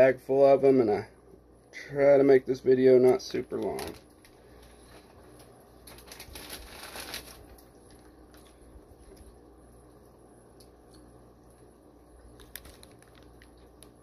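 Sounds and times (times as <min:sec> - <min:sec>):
plastic bags rustling: 0:03.7 - 0:09.2, 0:12.4 - 0:13.8.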